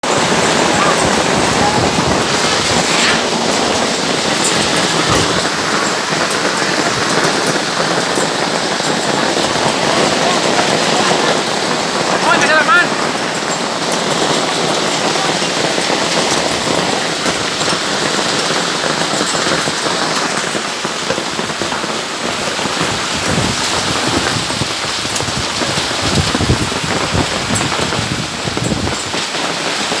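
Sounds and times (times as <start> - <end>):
strong wind gusts: 0.0 - 7.5, 22.2 - 29.2
hailstones striking: 0.0 - 30.0
heavy rain pelting down: 0.0 - 30.0.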